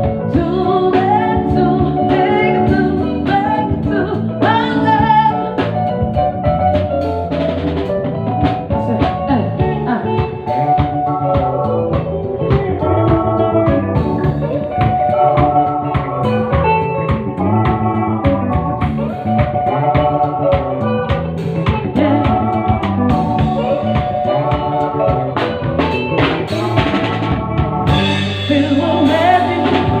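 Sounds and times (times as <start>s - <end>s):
band instruments: 0.0s - 30.0s
drum kit beat: 0.0s - 30.0s
people singing: 28.5s - 30.0s.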